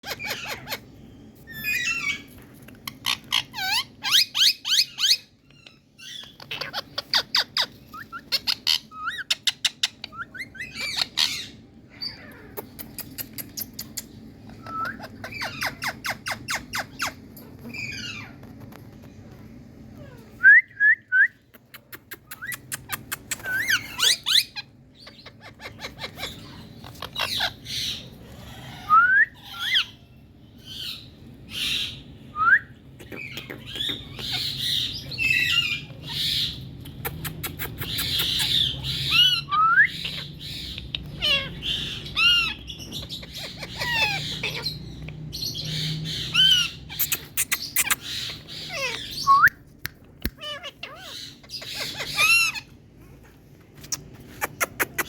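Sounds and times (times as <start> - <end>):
parrots squawking and chirping: 0.0 - 18.6, 22.0 - 32.2, 33.0 - 55.0
parrot screeches: 41.2 - 42.6, 43.2 - 44.8, 50.3 - 52.8.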